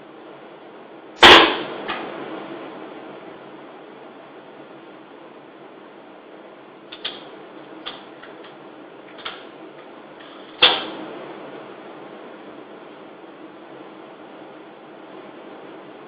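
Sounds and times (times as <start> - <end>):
steady hiss: 0.0 - 16.0
air rifle shot: 1.2 - 1.8.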